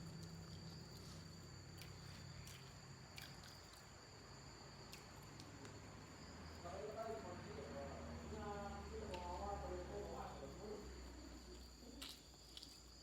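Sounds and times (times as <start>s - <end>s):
close-up chewing: 0.0s - 4.0s, 11.5s - 13.0s.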